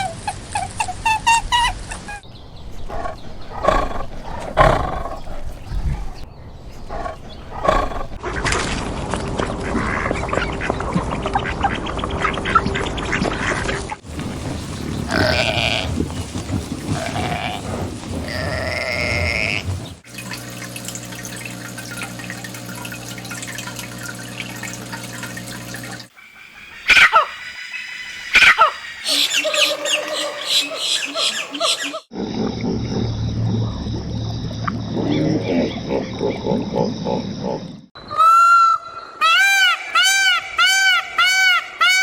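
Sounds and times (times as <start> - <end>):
steady humming: 14.1 - 31.6
short animal calls: 15.1 - 19.9.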